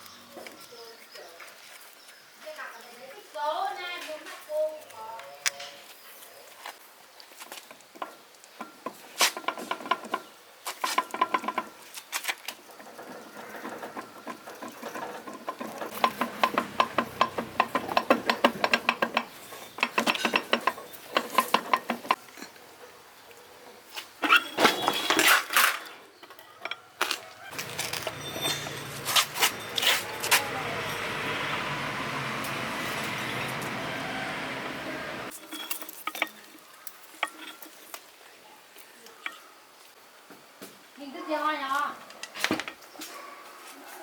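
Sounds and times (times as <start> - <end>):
metal tools clinking: 13.4 - 22.2, 27.5 - 31.2, 35.2 - 37.8.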